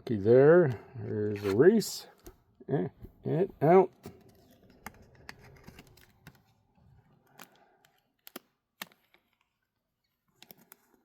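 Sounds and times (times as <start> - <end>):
cards and packaging clicking: 4.0 - 6.6, 7.2 - 11.0.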